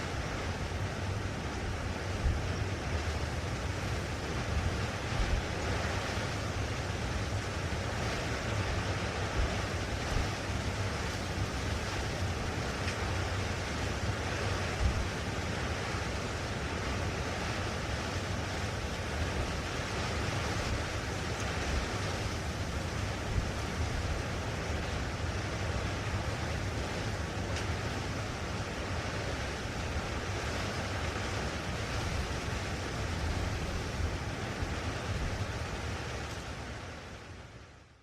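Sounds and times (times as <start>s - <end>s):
blustery wind: 0.0s - 38.0s
wind buffeting microphone: 18.4s - 36.8s.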